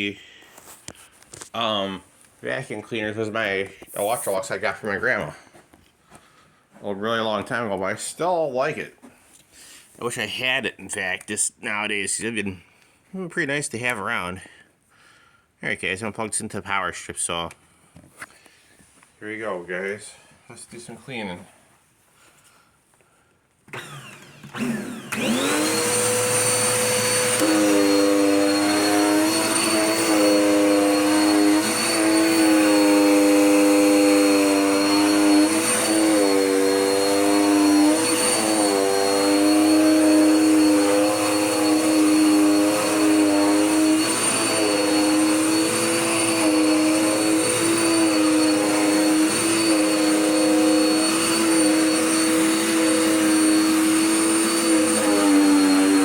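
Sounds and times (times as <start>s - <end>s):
vacuum cleaner motor whining: 3.9s - 4.6s, 23.7s - 56.0s.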